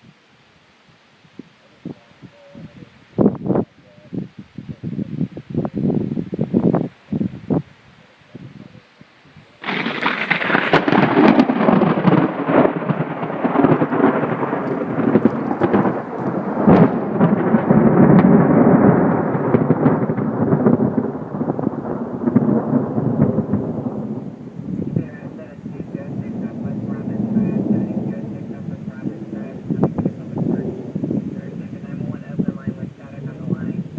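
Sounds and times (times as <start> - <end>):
thunder crack and rumble: 9.4 - 33.9.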